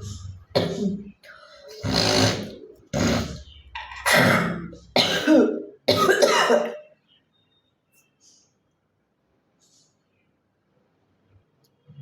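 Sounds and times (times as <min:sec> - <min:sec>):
woman coughing: 0:00.6 - 0:01.1, 0:04.1 - 0:06.8.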